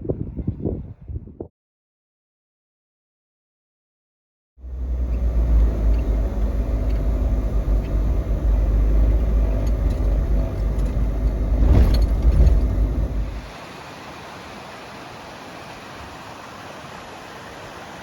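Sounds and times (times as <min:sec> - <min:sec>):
car road and engine rumble: 0:04.6 - 0:13.6.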